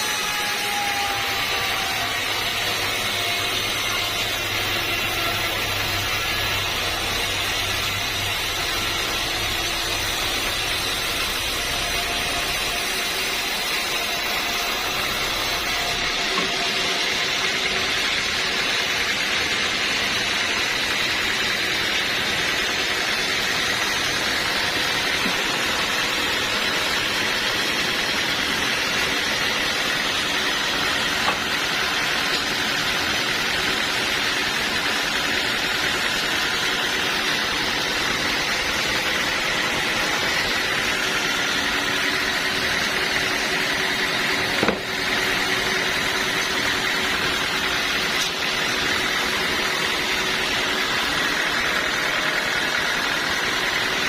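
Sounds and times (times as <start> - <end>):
saw blade cutting log: 0.0 - 54.0
low machine hum: 1.1 - 18.3.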